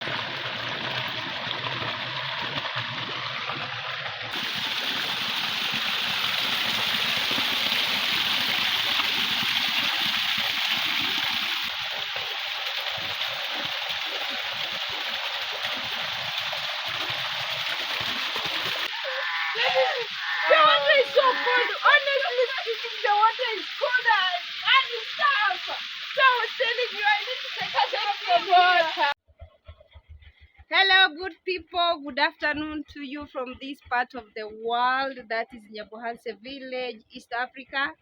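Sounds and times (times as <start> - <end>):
waterfall rushing: 4.3 - 10.5.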